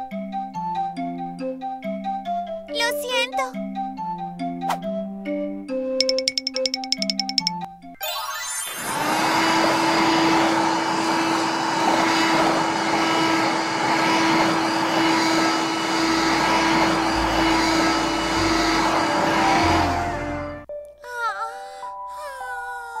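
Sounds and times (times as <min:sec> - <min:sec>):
toy vacuum motor whirring: 0:08.7 - 0:20.0.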